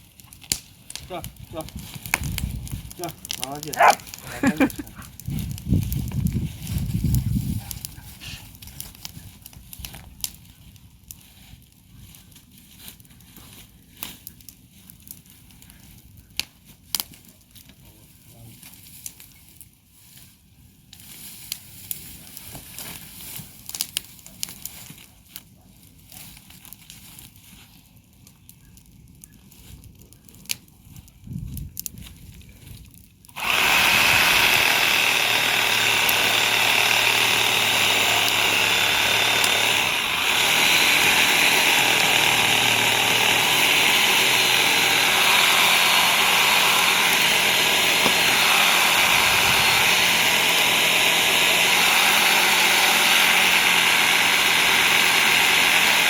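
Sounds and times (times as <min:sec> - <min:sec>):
power tool running: 0:33.4 - 0:56.0.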